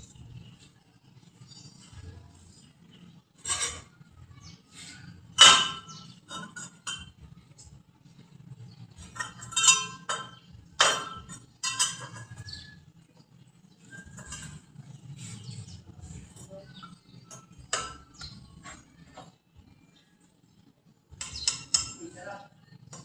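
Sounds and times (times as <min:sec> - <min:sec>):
metal parts clinking: 0:09.0 - 0:12.7.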